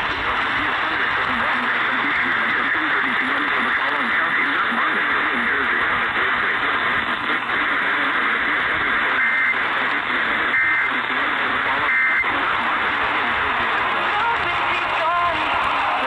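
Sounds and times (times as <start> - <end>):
radio static hiss: 0.0 - 16.0
two-tone data bursts: 7.1 - 16.0.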